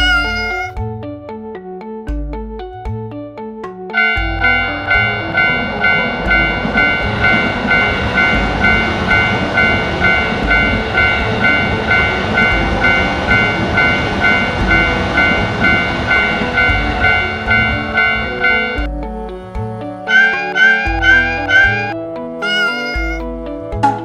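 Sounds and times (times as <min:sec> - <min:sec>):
passing train rumble: 0:04.0 - 0:18.9, 0:20.1 - 0:23.3
railroad crossing bell ringing: 0:04.0 - 0:18.9, 0:20.1 - 0:23.2.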